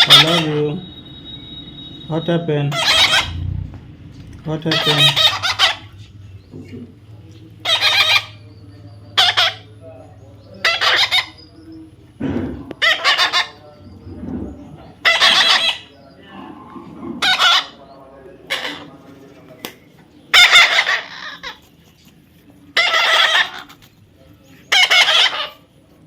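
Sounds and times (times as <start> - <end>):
parrot squawking: 0.0 - 3.5, 4.6 - 6.1, 7.6 - 8.4, 9.0 - 9.8, 10.5 - 11.6, 12.8 - 13.8, 14.9 - 16.0, 17.2 - 19.0, 20.3 - 21.7, 22.7 - 23.9, 24.7 - 25.7.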